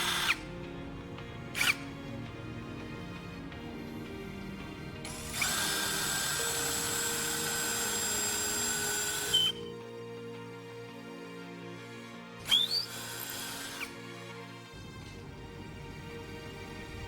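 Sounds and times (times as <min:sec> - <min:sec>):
power tool motor whine: 0:00.0 - 0:09.9, 0:12.4 - 0:14.0
background music: 0:00.0 - 0:17.0.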